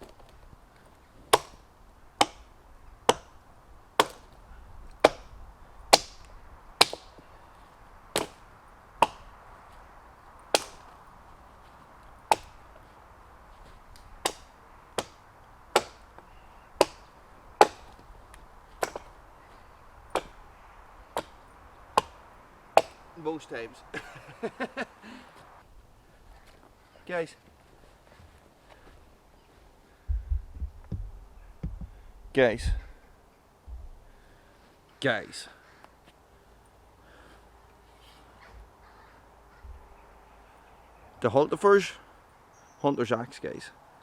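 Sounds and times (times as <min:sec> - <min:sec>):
axe chopping into tree trunk: 0:01.3 - 0:03.4, 0:04.0 - 0:07.3, 0:08.1 - 0:09.4, 0:10.4 - 0:11.1, 0:12.2 - 0:12.9, 0:13.6 - 0:23.2.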